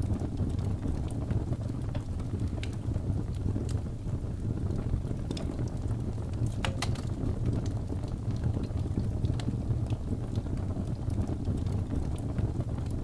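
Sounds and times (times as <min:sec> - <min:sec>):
wood fire crackling: 0:00.0 - 0:13.0
sharp pops of fire: 0:05.2 - 0:10.1.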